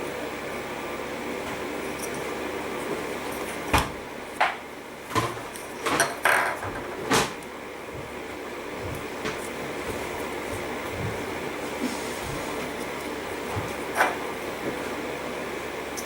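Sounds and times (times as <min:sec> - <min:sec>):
steady background hum: 0:00.0 - 0:16.0.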